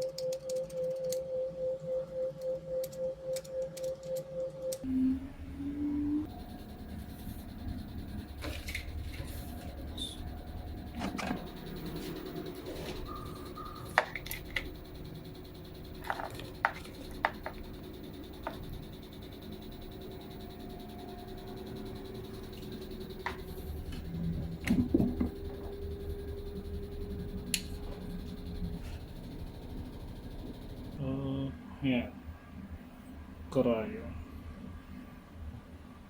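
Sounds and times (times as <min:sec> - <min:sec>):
steady low hum: 0:04.1 - 0:35.3
sharp clicks and knocks: 0:08.1 - 0:18.9, 0:22.5 - 0:25.8.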